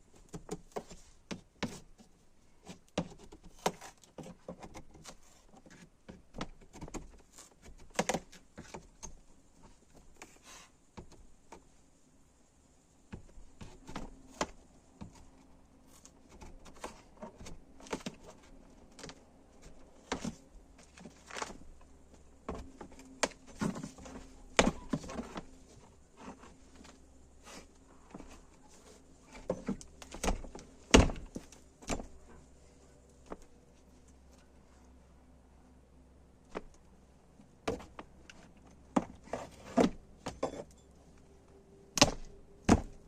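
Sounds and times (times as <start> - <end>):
renovation knocks and thuds: 22.4 - 25.5, 29.3 - 32.2, 42.0 - 43.0.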